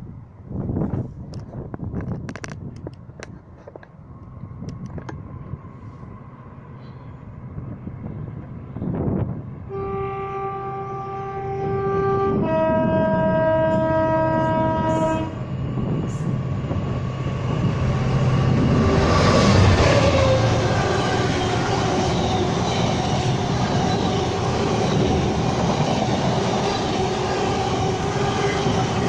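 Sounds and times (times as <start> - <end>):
train rumble: 0.0 - 29.0
train two-tone horn: 9.7 - 15.5.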